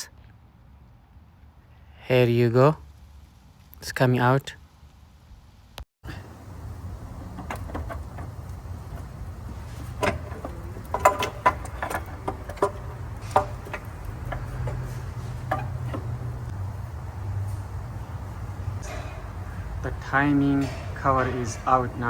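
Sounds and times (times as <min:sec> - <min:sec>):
steady low hum: 0:06.0 - 0:22.0
metal clicks and knocks: 0:06.1 - 0:16.6, 0:20.4 - 0:22.0.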